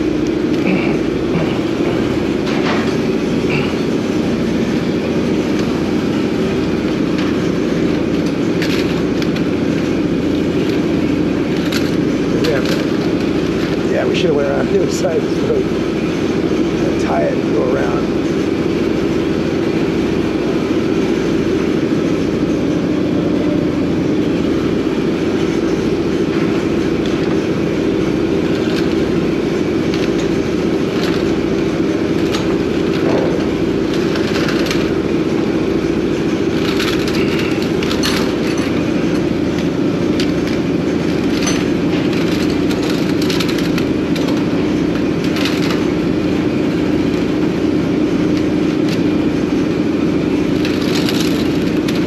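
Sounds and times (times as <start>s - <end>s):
machinery drone with low hum: 0.0s - 52.0s.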